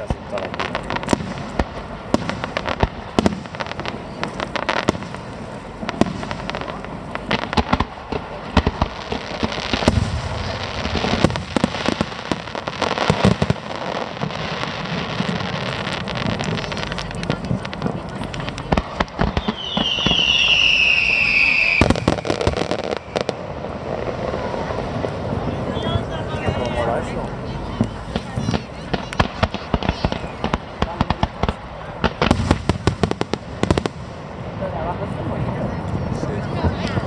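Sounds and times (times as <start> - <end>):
fireworks bangs: 0.0 - 37.0
fireworks crackling: 0.0 - 37.0
falling fireworks whistle: 18.0 - 26.8.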